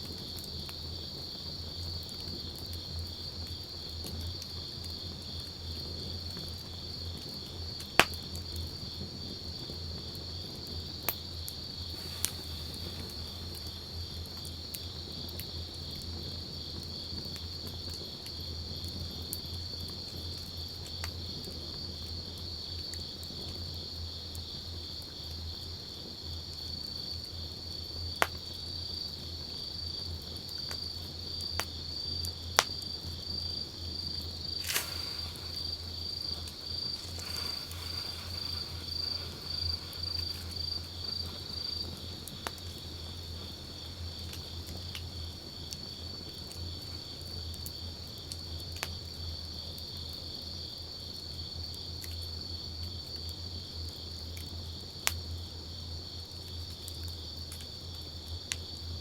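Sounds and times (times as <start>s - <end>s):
campfire crackling and popping: 1.6s - 18.1s, 30.5s - 46.5s
insect trill: 11.1s - 15.0s, 32.8s - 46.0s.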